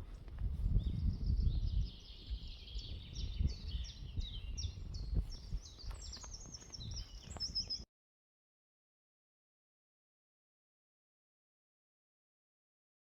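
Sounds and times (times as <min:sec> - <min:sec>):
birds chirping: 0:00.0 - 0:07.9.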